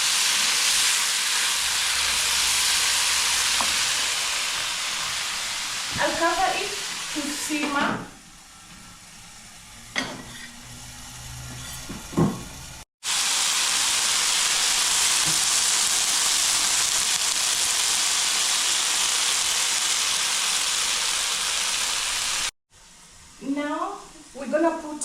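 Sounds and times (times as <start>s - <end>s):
curry sizzling in a pan: 0.0s - 11.5s, 12.6s - 25.0s.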